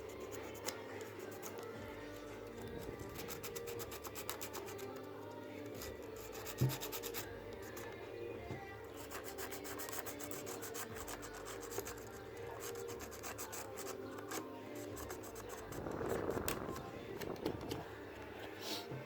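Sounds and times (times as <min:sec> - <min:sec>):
sandpaper rubbing on metal: 0:09.0 - 0:16.3.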